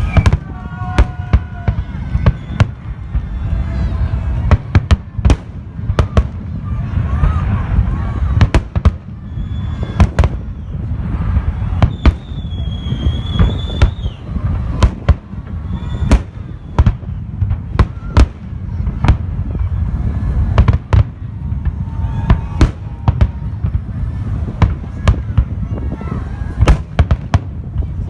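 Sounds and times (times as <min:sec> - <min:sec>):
continuous low rumble: 0:00.0 - 0:28.0
fireworks bangs: 0:00.0 - 0:28.0.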